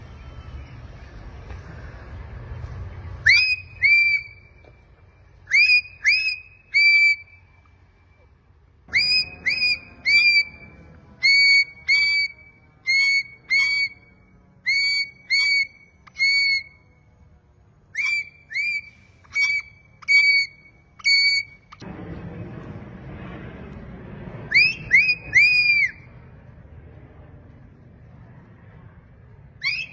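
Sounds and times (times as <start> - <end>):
parrot whistling: 3.2 - 4.6, 5.5 - 7.4, 8.9 - 16.8, 17.9 - 21.8, 24.5 - 26.0, 29.6 - 29.9.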